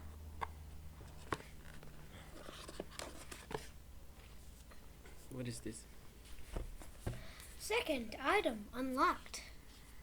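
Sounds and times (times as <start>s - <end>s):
cardboard and plastic rustling: 1.0s - 3.7s.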